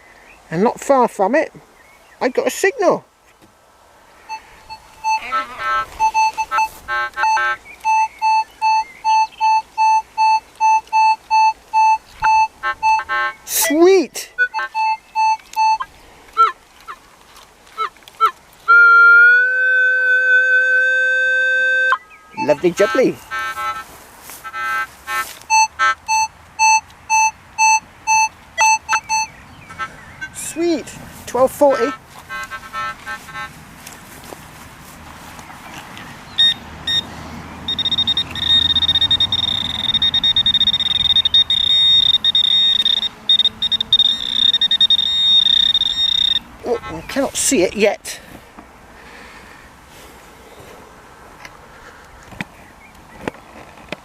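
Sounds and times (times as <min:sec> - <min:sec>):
metal detector buzzing tone: 0:04.3 - 0:13.8, 0:18.7 - 0:23.8, 0:37.7 - 0:47.0
metal detector falling chirps: 0:37.7 - 0:46.4.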